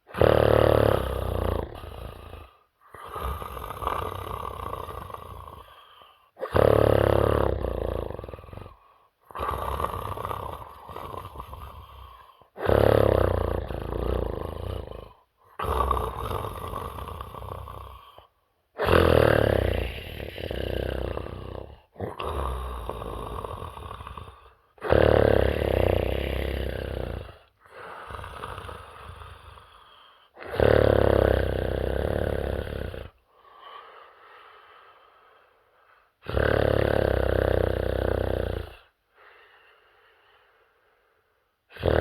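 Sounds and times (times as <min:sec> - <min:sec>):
person snoring heavily: 0:00.0 - 0:35.3, 0:36.2 - 0:39.5, 0:41.7 - 0:42.0.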